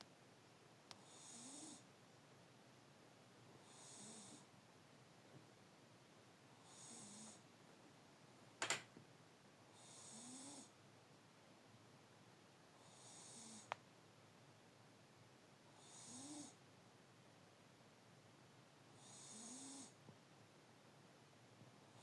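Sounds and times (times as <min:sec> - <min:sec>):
pet snoring with whistle: 0:01.0 - 0:01.8, 0:03.6 - 0:04.5, 0:06.6 - 0:07.4, 0:09.8 - 0:10.7, 0:12.8 - 0:13.7, 0:15.8 - 0:16.6, 0:19.0 - 0:20.0.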